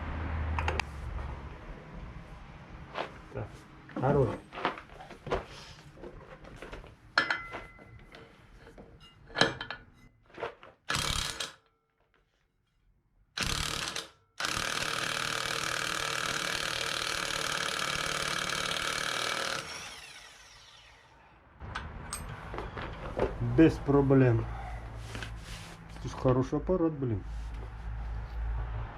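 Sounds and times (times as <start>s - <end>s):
impact wrench hammering: 21.6s - 22.4s.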